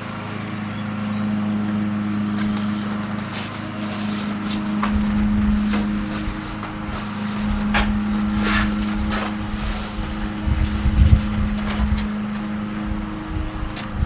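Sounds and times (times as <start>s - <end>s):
machine hum: 0.0s - 14.0s
packing material rustling: 2.2s - 12.2s.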